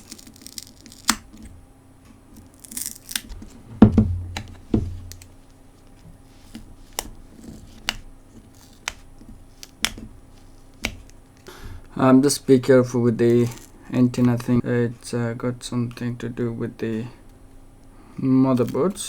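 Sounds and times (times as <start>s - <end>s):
phone being handled knocks: 3.4s - 5.3s.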